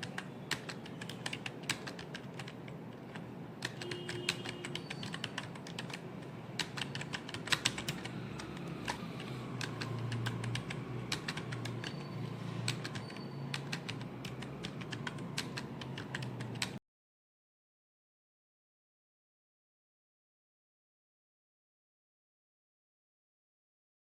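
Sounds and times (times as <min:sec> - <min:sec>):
fast typing on keyboard: 0:00.0 - 0:16.8.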